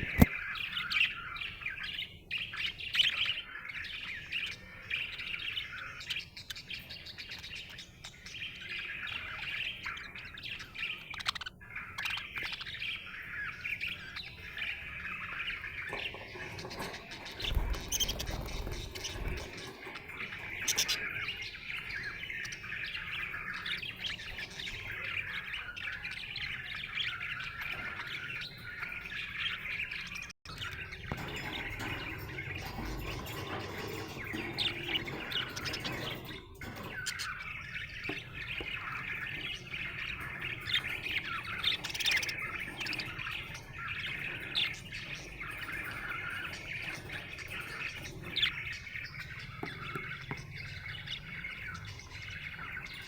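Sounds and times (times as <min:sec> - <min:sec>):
budgerigar chirping: 0:00.0 - 0:01.7.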